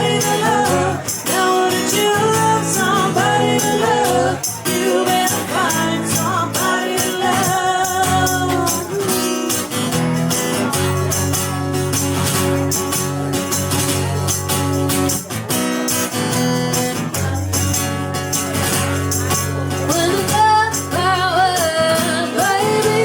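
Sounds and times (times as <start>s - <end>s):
person singing: 0.0s - 9.7s, 19.7s - 23.0s.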